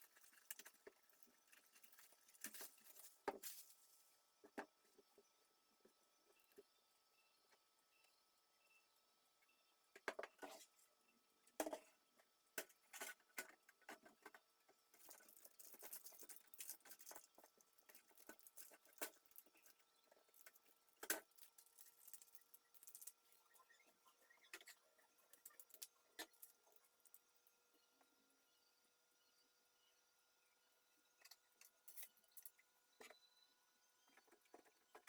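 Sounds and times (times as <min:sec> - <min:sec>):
computer parts clicking and scraping: 0:12.6 - 0:26.9, 0:31.2 - 0:33.2.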